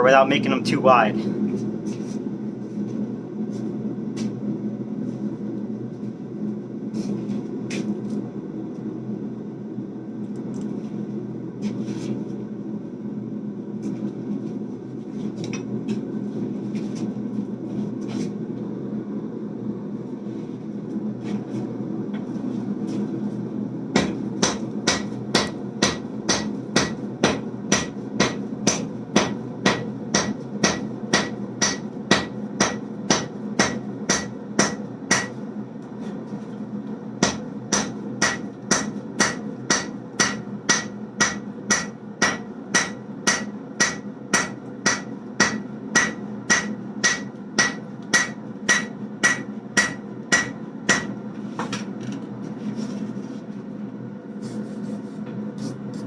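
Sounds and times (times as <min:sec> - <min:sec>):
hammer striking metal on anvil: 0:24.0 - 0:35.4, 0:37.2 - 0:51.2.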